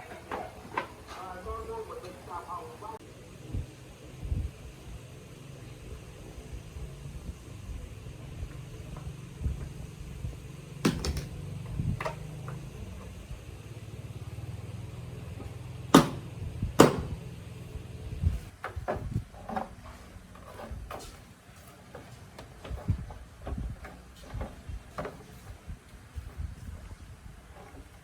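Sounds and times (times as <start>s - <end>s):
sharp knocks: 10.8s - 11.4s, 15.9s - 17.3s.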